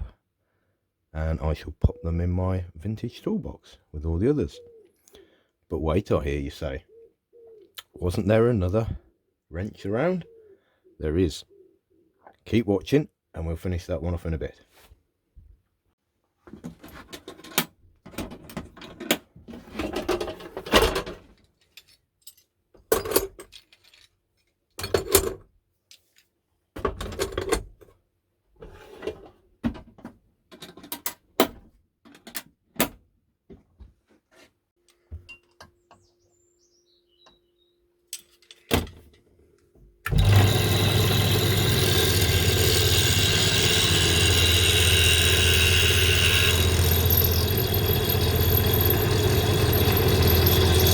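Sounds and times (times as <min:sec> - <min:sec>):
power drill drilling metal: 0:40.1 - 0:50.9.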